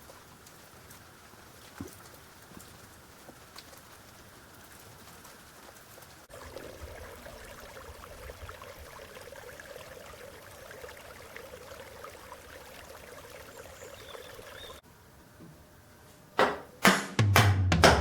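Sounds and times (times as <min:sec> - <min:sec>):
running water: 0:00.0 - 0:14.8
loud drum hit: 0:16.9 - 0:18.0.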